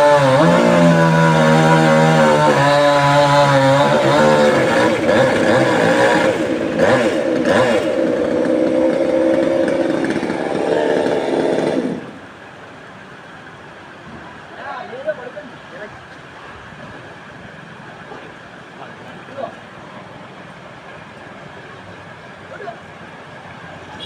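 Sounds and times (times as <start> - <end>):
chainsaw running at high revs: 0.0 - 12.2.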